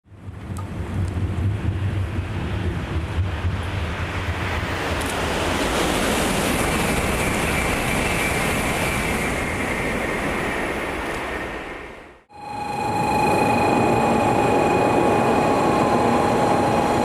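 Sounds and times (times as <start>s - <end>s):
train rushing past: 0.2s - 17.0s
faint high whine: 12.3s - 17.0s.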